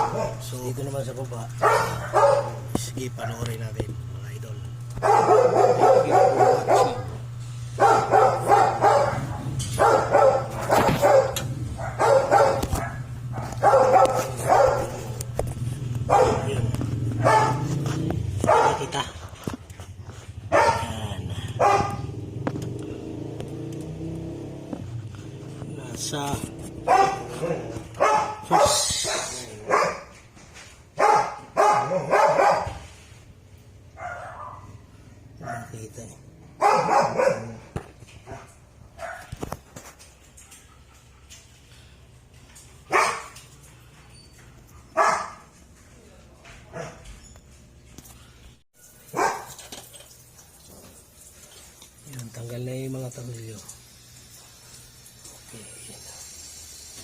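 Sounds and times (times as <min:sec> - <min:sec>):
dog barking: 0:00.0 - 0:00.5, 0:01.6 - 0:03.6, 0:05.0 - 0:15.3, 0:16.0 - 0:19.2, 0:20.4 - 0:22.2, 0:26.8 - 0:30.2, 0:31.0 - 0:32.9, 0:33.9 - 0:35.9, 0:36.5 - 0:39.5, 0:42.9 - 0:43.4, 0:44.9 - 0:45.6, 0:46.7 - 0:47.0, 0:49.1 - 0:49.6
steady low hum: 0:00.0 - 0:48.6.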